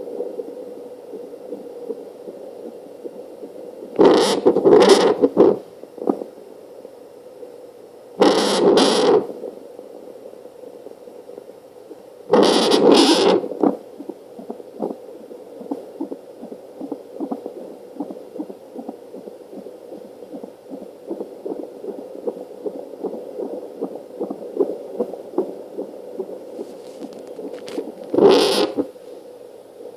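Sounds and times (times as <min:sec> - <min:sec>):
steady hum: 0:00.0 - 0:29.9
fetal heartbeat on doppler: 0:12.3 - 0:29.0
loud rushing crackling burst: 0:12.4 - 0:13.7.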